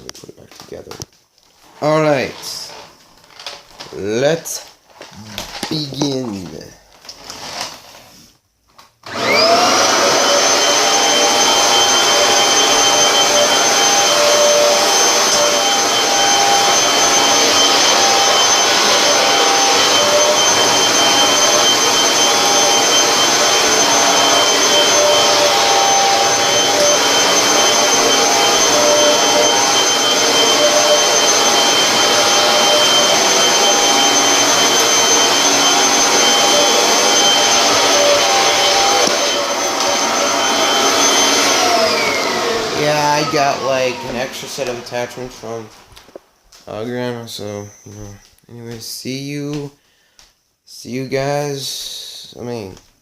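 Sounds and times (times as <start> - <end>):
vacuum cleaner motor whine: 9.0 - 48.3.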